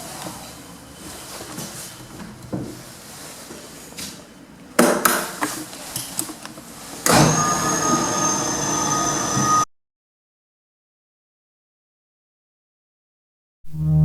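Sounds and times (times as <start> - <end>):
lift motor high whine: 6.8 - 9.7.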